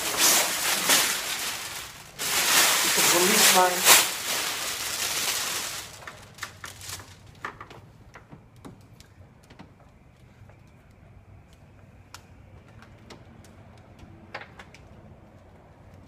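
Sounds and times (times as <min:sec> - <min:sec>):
plastic film crackling: 0:00.0 - 0:07.7.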